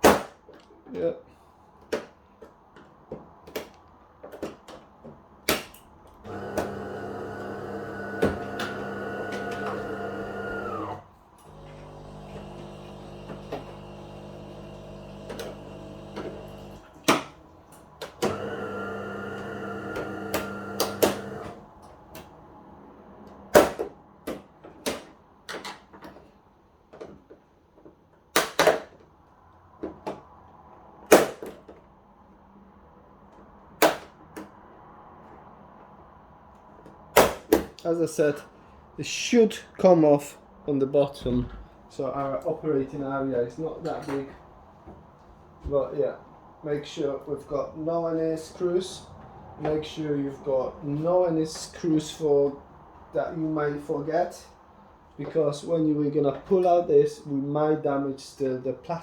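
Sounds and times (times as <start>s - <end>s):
steady machine hum: 6.3s - 17.0s, 18.2s - 21.8s.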